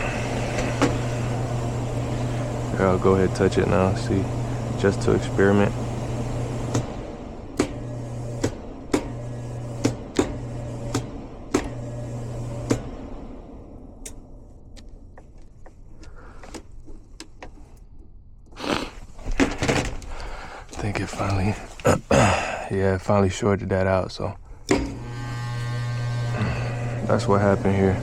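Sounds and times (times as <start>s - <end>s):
handling noise: 0.0s - 2.7s
sharp electrical clicks: 0.0s - 13.2s, 14.0s - 16.2s
electrical hum: 0.0s - 28.0s.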